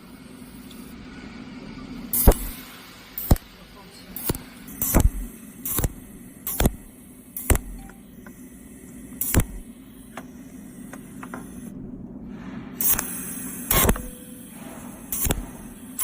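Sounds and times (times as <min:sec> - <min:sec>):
welding machine low hum: 0:00.0 - 0:16.0
spot welds snapping: 0:02.2 - 0:03.5, 0:04.2 - 0:08.0, 0:09.2 - 0:10.2, 0:12.8 - 0:16.0.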